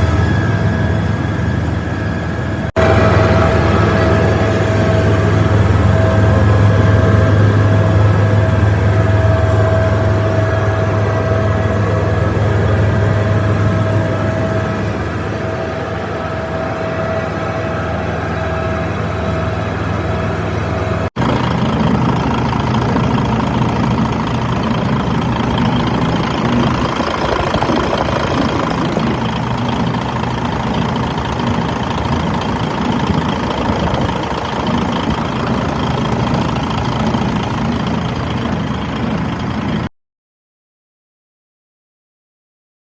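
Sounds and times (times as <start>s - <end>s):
steady whine: 0.0s - 39.9s
truck engine running: 0.0s - 39.9s.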